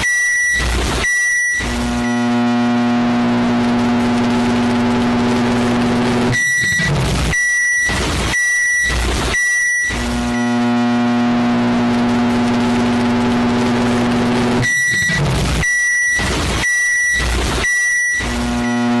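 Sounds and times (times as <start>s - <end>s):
microwave oven humming: 3.1s - 6.3s.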